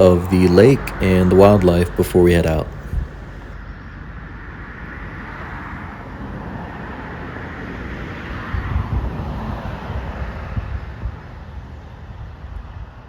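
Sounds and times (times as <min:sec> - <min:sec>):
car tyre noise passing: 0:00.0 - 0:03.6
wind buffeting microphone: 0:00.0 - 0:03.6, 0:08.5 - 0:11.1.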